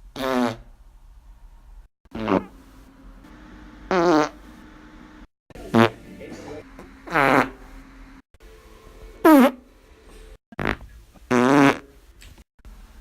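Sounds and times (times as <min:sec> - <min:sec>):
farts: 0:00.1 - 0:00.7, 0:02.1 - 0:02.5, 0:03.9 - 0:04.4, 0:05.7 - 0:06.0, 0:07.1 - 0:07.5, 0:09.2 - 0:09.6, 0:10.5 - 0:11.9.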